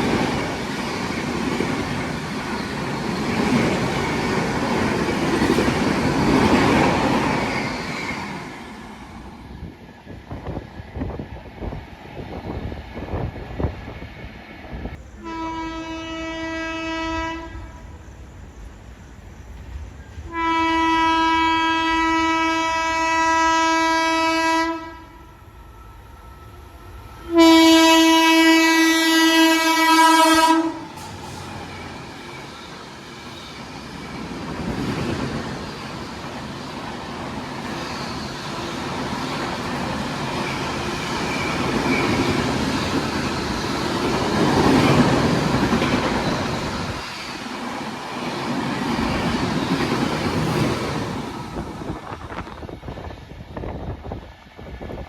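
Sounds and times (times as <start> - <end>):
train rumble and wheel clatter: 0.0 - 55.0
locomotive horn blasts: 15.2 - 17.9, 20.3 - 25.2, 27.3 - 30.8.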